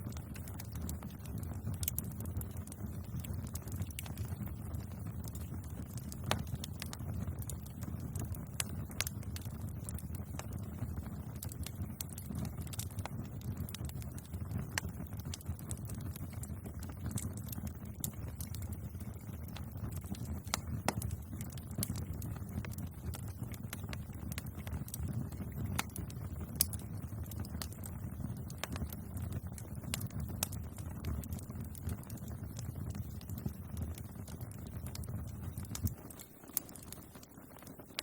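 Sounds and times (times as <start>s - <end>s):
fire crackling and popping: 0.0s - 38.0s
flames rumbling: 0.0s - 38.0s.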